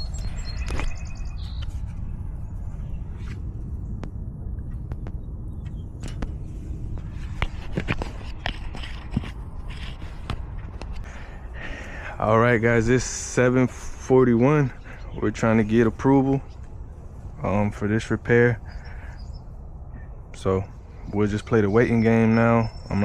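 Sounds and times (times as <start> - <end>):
steady low rumble: 0.0 - 23.0
handling clicks and scrapes: 5.7 - 11.1.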